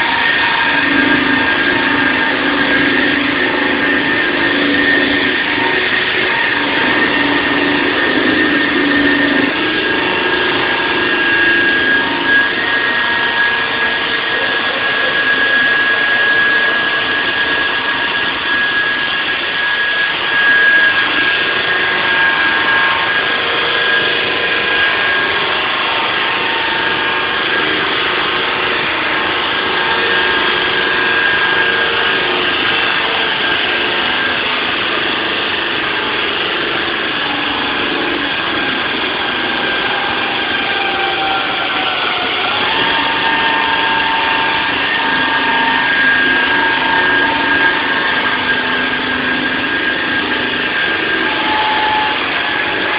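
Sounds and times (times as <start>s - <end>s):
concrete saw running: 0.0s - 52.9s.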